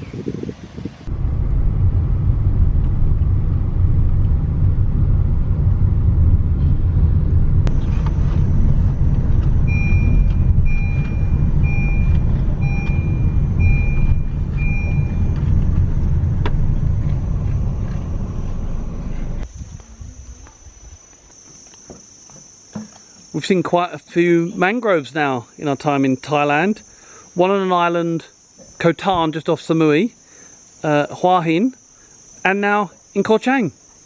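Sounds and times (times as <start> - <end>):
vehicle engine rumble: 0.0 - 20.9
short electronic beeps: 9.6 - 15.4.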